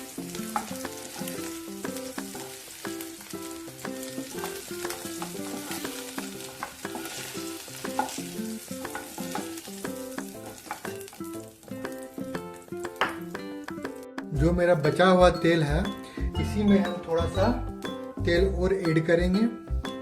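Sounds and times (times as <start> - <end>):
food sizzling in hot oil: 0.0 - 14.1
light background melody: 0.0 - 20.0.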